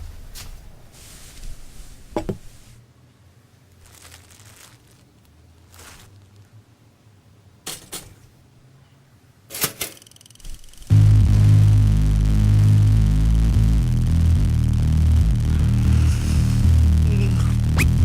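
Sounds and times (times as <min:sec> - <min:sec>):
faint low hum: 0:10.3 - 0:18.0.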